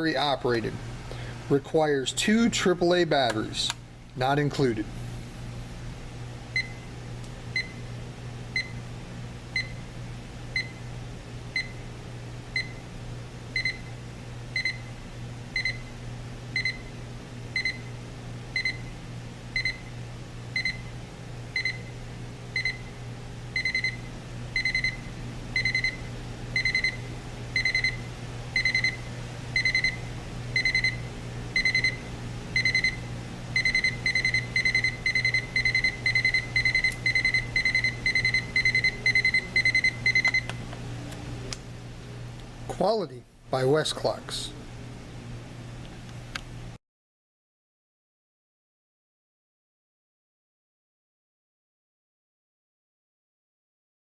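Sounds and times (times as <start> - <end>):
alarm clock beeping: 23.6 - 24.0, 24.6 - 25.0, 25.6 - 26.0, 26.6 - 27.0, 27.6 - 28.0, 28.6 - 29.0, 29.6 - 30.0, 30.6 - 31.0, 31.6 - 32.0, 32.6 - 33.0, 33.6 - 40.5.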